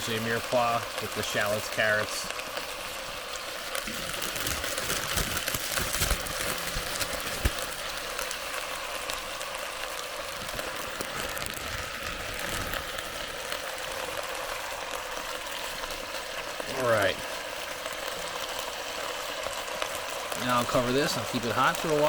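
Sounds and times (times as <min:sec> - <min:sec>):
chicken sizzling in fat: 0:00.0 - 0:22.0.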